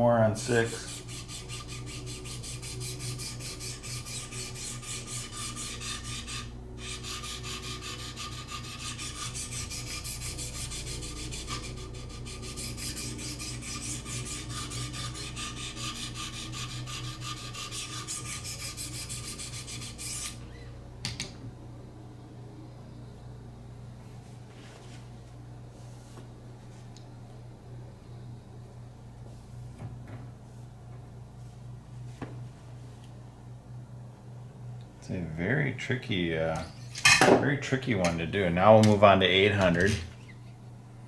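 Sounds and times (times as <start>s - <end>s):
steady low hum: 0.0s - 41.0s
sharpening stone scraping blade: 0.7s - 20.4s.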